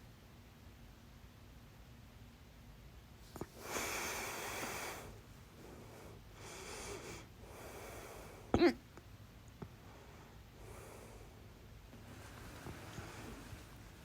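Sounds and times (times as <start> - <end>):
long breaths: 3.4 - 8.5, 9.8 - 13.8
woman hiccuping: 8.5 - 8.8.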